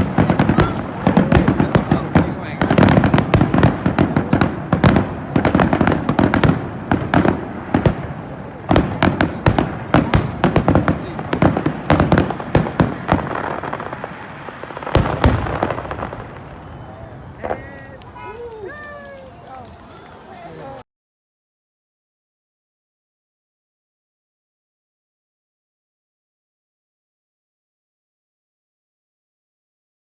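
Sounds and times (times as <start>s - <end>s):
continuous rumble: 0.0s - 13.1s
loud firework bang: 0.0s - 18.8s
fireworks bursts: 0.0s - 20.8s.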